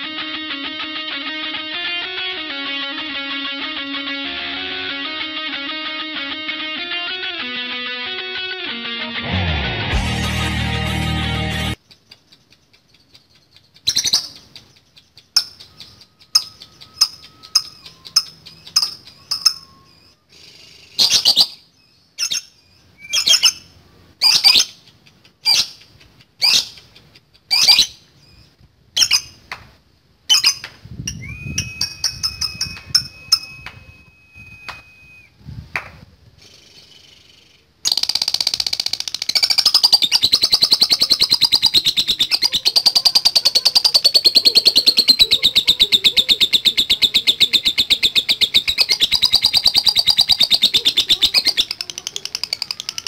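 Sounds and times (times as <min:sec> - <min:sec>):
lovebird chirping: 0:11.7 - 0:29.4, 0:30.3 - 0:35.4, 0:36.4 - 0:53.0
lovebird chattering trill: 0:11.8 - 0:28.4, 0:29.0 - 0:29.4, 0:30.3 - 0:34.5, 0:36.4 - 0:53.0.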